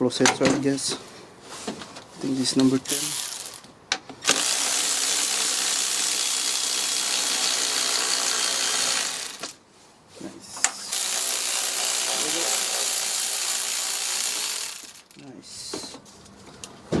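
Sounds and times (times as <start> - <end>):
ratchet clicking: 2.9 - 3.6, 7.9 - 9.6, 10.9 - 15.2.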